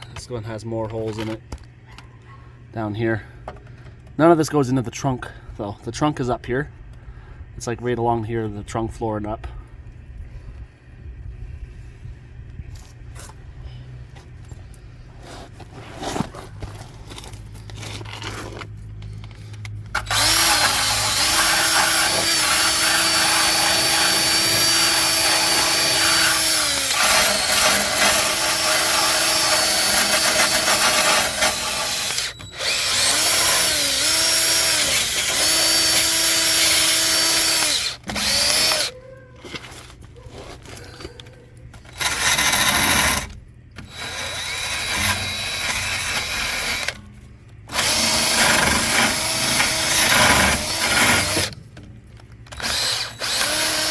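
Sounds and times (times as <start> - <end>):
power tool motor whine: 19.9 - 38.9, 41.9 - 47.0, 47.7 - 51.6, 52.5 - 53.9.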